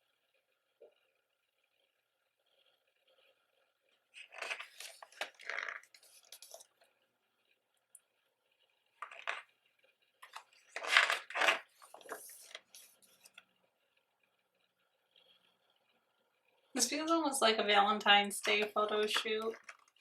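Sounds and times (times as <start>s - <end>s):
book pages turning: 4.2s - 6.8s, 9.0s - 9.5s, 10.2s - 13.5s, 18.4s - 20.0s.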